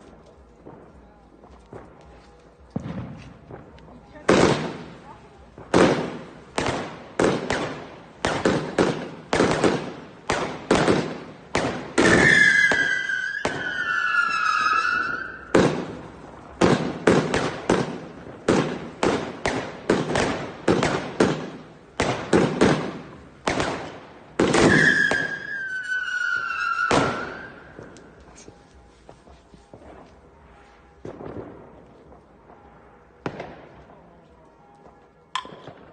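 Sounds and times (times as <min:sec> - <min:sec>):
fireworks bangs: 0:00.0 - 0:35.9
descending firework whistle: 0:12.0 - 0:15.6, 0:24.6 - 0:28.5.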